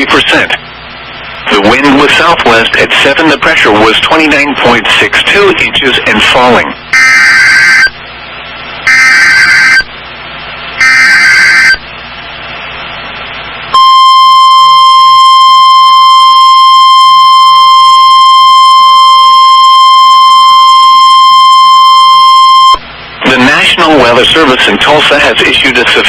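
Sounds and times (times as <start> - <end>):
digital data bursts: 1.6 - 8.0, 8.8 - 9.9, 10.8 - 11.8
steady alarm tone: 6.9 - 8.0, 8.8 - 10.0, 10.8 - 11.9, 13.7 - 22.9.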